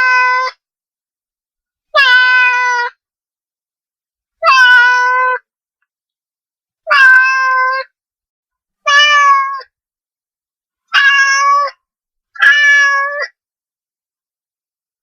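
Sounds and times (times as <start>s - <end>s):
cat meowing: 0.0s - 0.6s, 2.0s - 3.0s, 4.4s - 5.4s, 6.9s - 7.9s, 8.8s - 9.7s, 10.9s - 11.8s, 12.4s - 13.4s.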